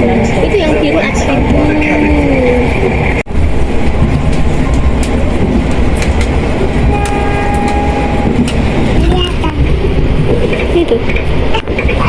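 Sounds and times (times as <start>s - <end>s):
train rumbling on rails: 0.0s - 12.0s
wheels clicking over rail joints: 3.8s - 12.0s
train horn: 6.8s - 8.4s.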